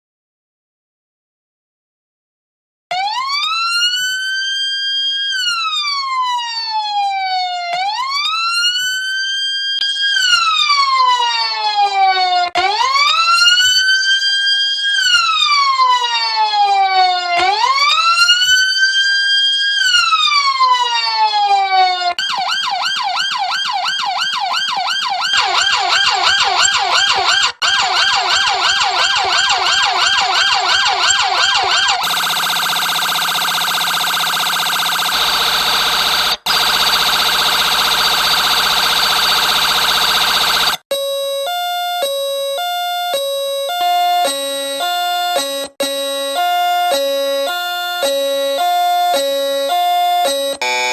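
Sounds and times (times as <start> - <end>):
ambulance siren wailing: 2.9 - 50.9
second siren wail: 2.9 - 50.9
siren fast yelp: 9.8 - 50.9.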